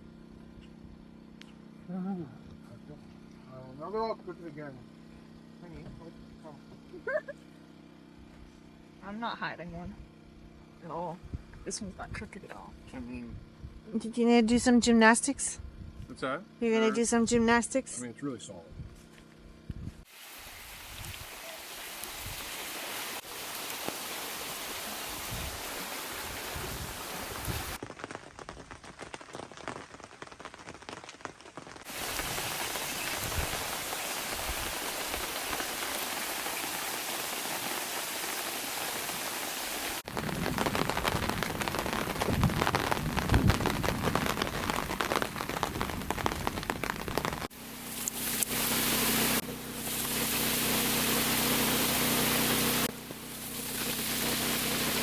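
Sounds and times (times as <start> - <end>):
low mechanical hum: 0.0 - 20.0
steady rain falling: 20.1 - 55.0.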